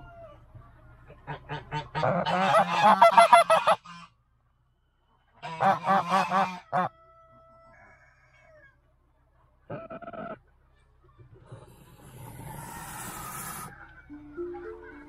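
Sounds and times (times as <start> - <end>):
goose honking: 1.1 - 4.1, 5.4 - 6.9.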